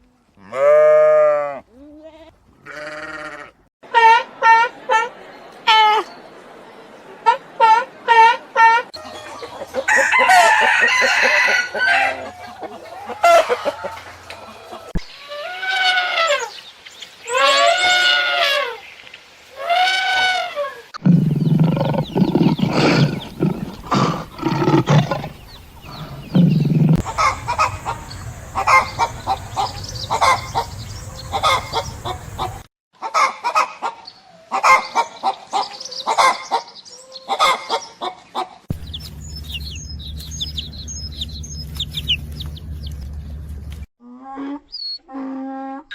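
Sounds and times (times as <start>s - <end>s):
hens clucking: 8.4s - 15.0s, 21.0s - 36.6s, 37.3s - 43.2s
rooster crowing: 9.0s - 14.9s, 27.0s - 32.6s.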